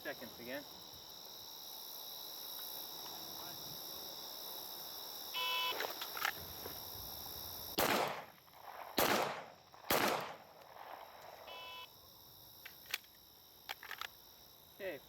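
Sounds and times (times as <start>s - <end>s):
handgun shots: 7.8s - 10.4s.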